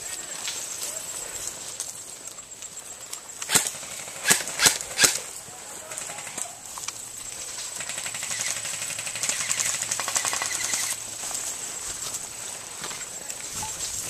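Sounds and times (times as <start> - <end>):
airsoft gun full auto fire: 3.4 - 5.2, 7.8 - 11.0.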